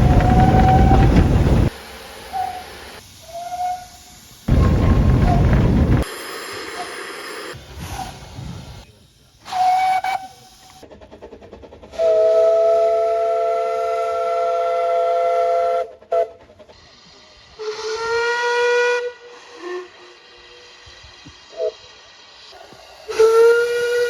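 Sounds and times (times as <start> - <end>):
train horn blasts: 12.0 - 16.4, 17.6 - 20.2, 23.1 - 24.0.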